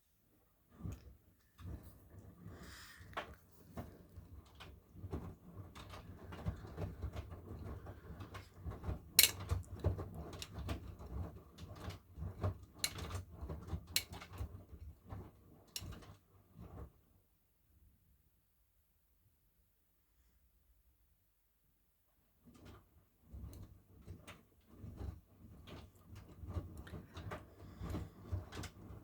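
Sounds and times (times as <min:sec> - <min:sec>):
washing machine rumble: 0:00.6 - 0:17.1, 0:22.4 - 0:29.0
clicks and knocks: 0:08.8 - 0:10.8.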